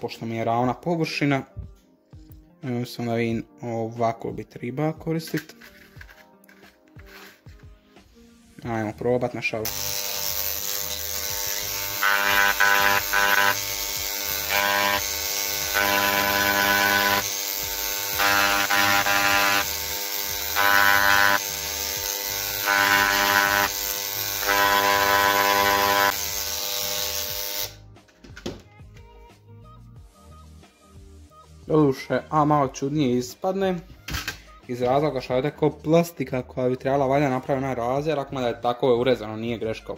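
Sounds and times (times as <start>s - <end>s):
electric engraving pen buzzing: 9.6s - 27.9s.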